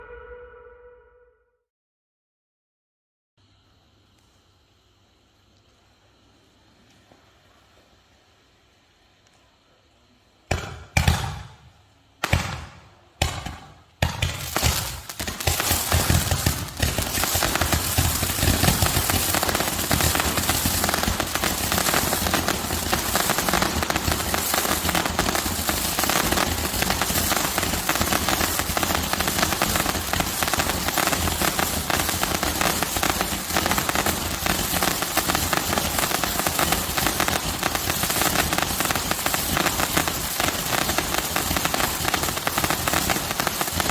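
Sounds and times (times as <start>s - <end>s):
firework crackling: 10.5s - 43.9s
roman candle shots: 10.5s - 43.9s.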